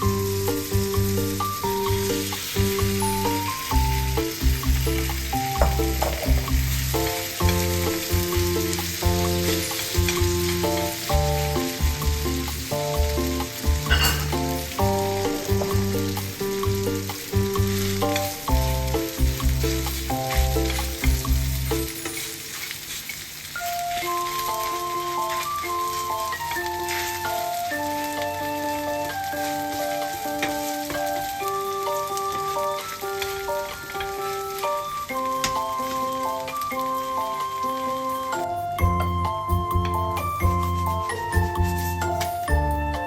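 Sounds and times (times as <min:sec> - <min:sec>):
background music with bass line: 0:00.0 - 0:21.9, 0:38.5 - 0:43.0
pancake sizzling in oil: 0:00.0 - 0:42.8.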